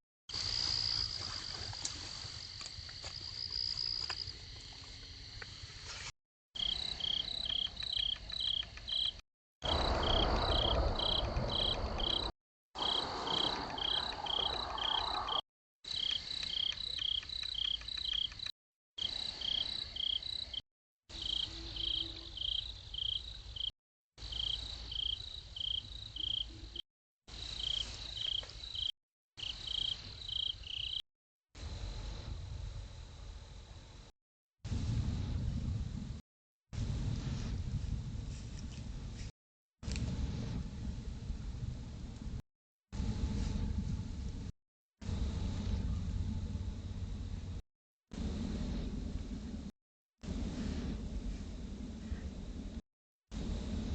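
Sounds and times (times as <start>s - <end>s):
crickets chirping: 0.3s - 6.0s, 6.6s - 31.0s
low rushing noise: 9.6s - 15.4s.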